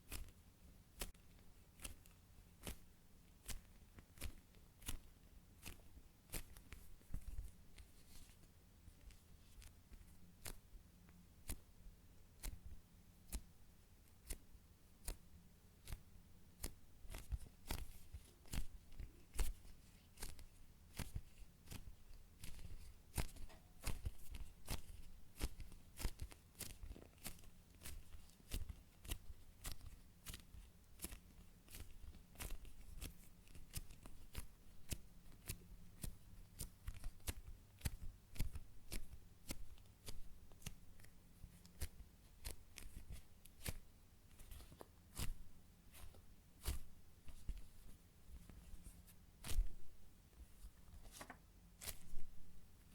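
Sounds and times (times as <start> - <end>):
foam toy clicking and crackling: 19.3 - 43.8.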